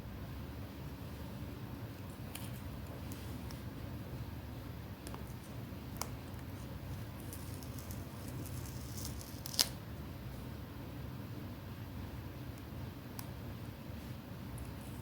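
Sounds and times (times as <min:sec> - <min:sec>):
steady low hum: 0:00.0 - 0:15.0
paper rustling: 0:06.5 - 0:09.8.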